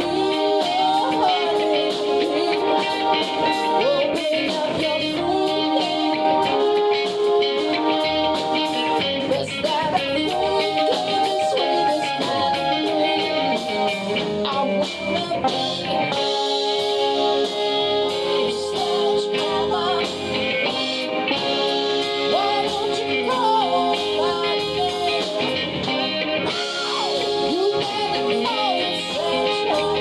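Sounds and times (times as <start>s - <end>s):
person singing: 0.0s - 8.0s, 8.6s - 25.7s, 26.5s - 30.0s
guitar accompaniment: 0.0s - 30.0s.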